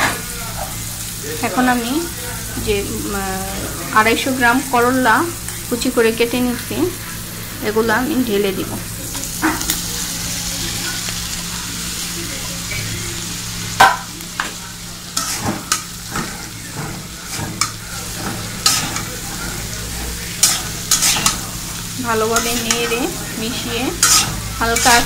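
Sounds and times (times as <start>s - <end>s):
vegetables sizzling in hot oil: 0.0s - 25.0s
spatula scraping a pan: 14.4s - 25.0s.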